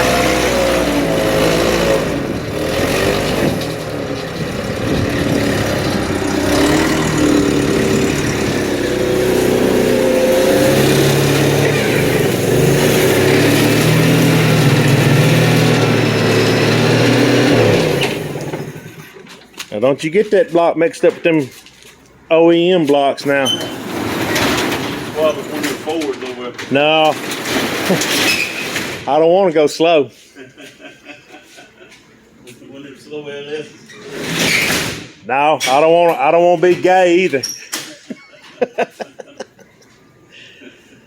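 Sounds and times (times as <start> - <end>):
engine running loudly: 0.0 - 18.8.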